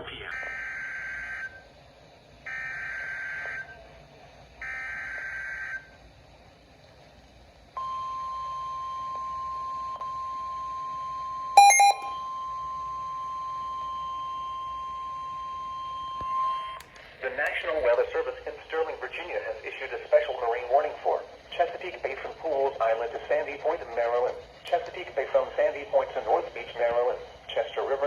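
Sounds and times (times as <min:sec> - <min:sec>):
brief loud beep: 0:11.6 - 0:12.2
steady alert tone: 0:11.6 - 0:12.2.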